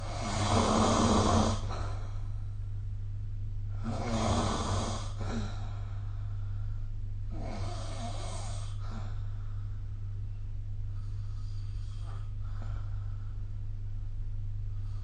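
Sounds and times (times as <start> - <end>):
person snoring: 0.0 - 2.3, 3.7 - 5.9, 7.3 - 9.2
quiet breathing: 0.0 - 2.8, 3.6 - 15.0.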